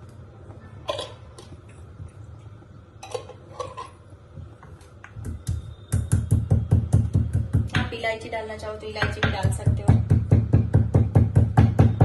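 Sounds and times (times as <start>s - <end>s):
pestle pounding in a mortar: 5.2s - 7.9s, 9.0s - 12.0s.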